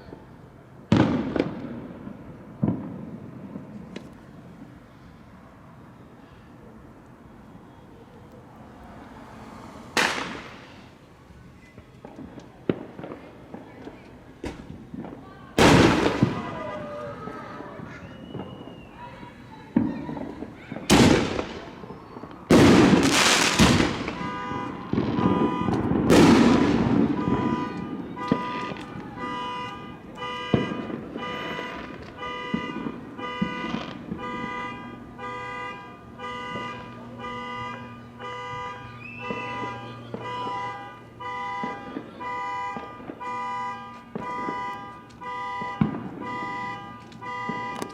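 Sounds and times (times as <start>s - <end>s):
fireworks bursting: 0.0s - 5.6s, 8.6s - 47.9s
car alarm repeating tone: 24.1s - 25.9s, 26.8s - 47.9s.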